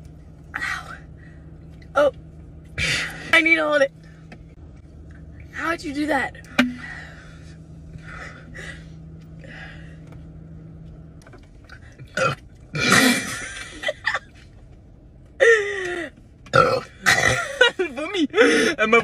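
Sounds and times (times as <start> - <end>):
woman belching and retching: 12.1 - 13.4, 16.5 - 17.6.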